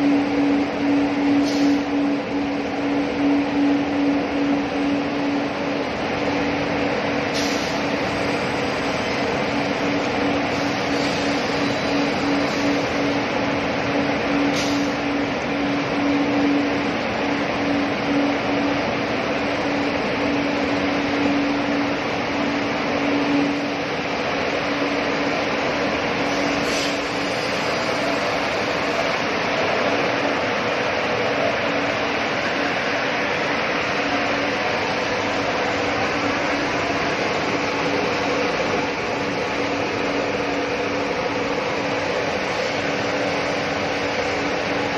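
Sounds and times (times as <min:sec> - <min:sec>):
low pulsing tone: 0:00.0 - 0:07.2
machinery humming: 0:00.0 - 0:44.9.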